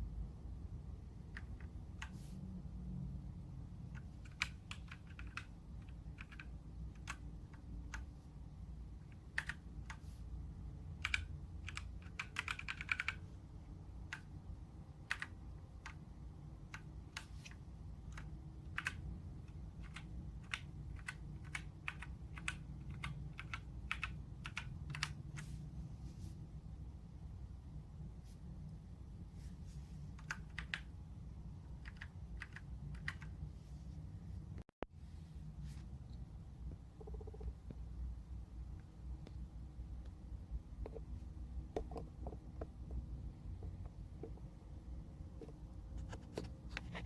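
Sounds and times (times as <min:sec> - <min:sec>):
mechanical keyboard typing: 0:01.2 - 0:02.2, 0:03.9 - 0:08.2, 0:09.0 - 0:10.2, 0:10.9 - 0:13.3, 0:14.0 - 0:25.4, 0:30.2 - 0:30.9, 0:31.7 - 0:33.4, 0:37.0 - 0:37.6.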